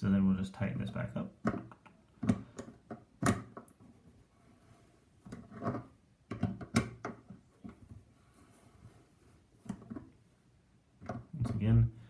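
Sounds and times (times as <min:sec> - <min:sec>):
faucet parts knocking and clicking: 0:05.3 - 0:07.3.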